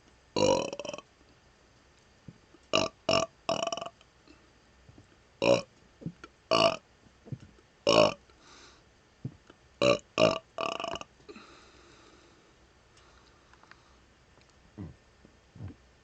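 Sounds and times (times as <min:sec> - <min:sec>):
man burping: 0:00.4 - 0:01.0, 0:02.8 - 0:03.9, 0:05.4 - 0:05.7, 0:06.5 - 0:06.8, 0:07.9 - 0:08.2, 0:09.8 - 0:11.5.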